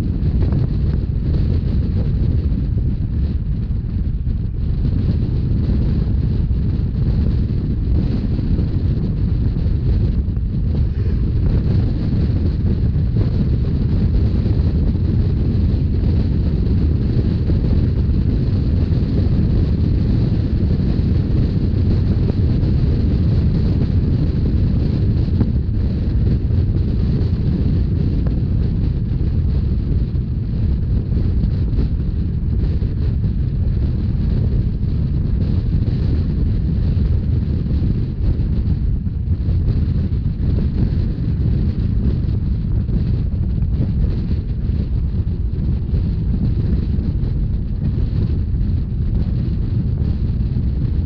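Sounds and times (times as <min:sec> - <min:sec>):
wind on microphone: 0:00.0 - 0:51.0
train rumbling: 0:09.9 - 0:22.5.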